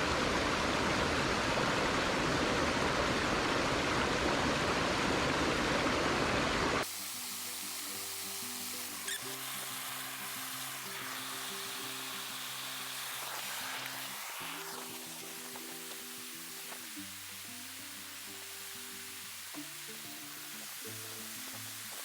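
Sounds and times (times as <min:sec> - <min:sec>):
stream rushing: 0:00.0 - 0:22.0
slow music with held notes: 0:14.7 - 0:22.0.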